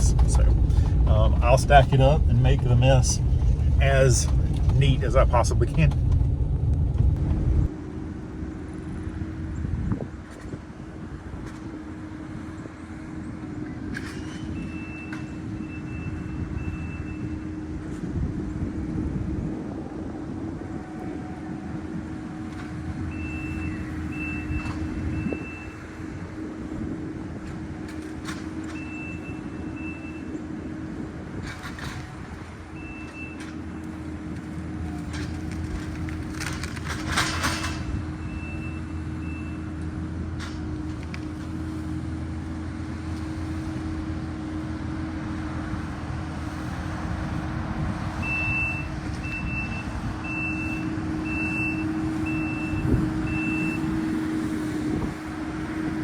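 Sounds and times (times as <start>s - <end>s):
heavy machine engine running: 0.0s - 56.0s
reversing alarm beeping: 14.5s - 17.4s, 23.1s - 25.9s, 28.7s - 30.3s, 38.2s - 39.8s, 48.2s - 54.1s.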